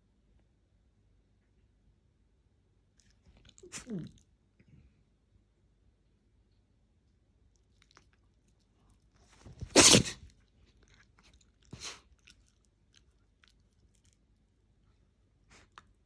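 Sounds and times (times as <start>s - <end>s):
dog sneezing: 3.6s - 4.1s, 9.4s - 10.3s, 11.7s - 12.0s
dog breath through nose: 11.7s - 12.1s.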